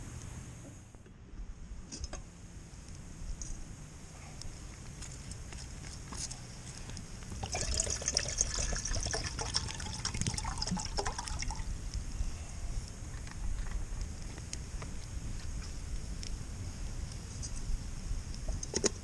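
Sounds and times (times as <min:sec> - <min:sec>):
steady low rumble: 0:00.0 - 0:19.0
liquid pouring and splashing: 0:07.4 - 0:11.7.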